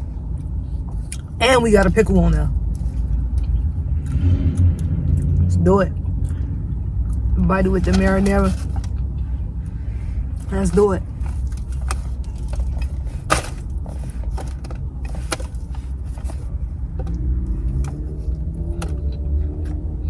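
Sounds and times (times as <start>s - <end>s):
low steady rumble: 0.0s - 20.0s
close-up chewing: 2.6s - 5.4s.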